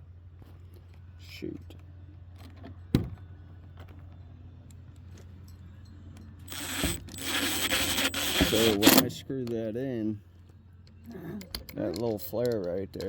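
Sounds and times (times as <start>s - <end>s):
power driver driving screw: 6.5s - 9.2s.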